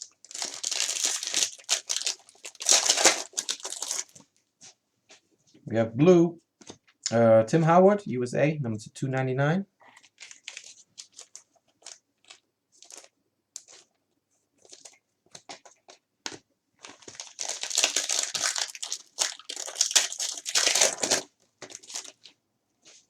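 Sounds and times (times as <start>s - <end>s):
wrapper rustling and crinkling: 0.0s - 4.3s, 9.9s - 14.0s, 14.6s - 16.0s, 16.8s - 23.0s
wrapper clicks: 0.2s - 4.1s, 16.8s - 22.3s.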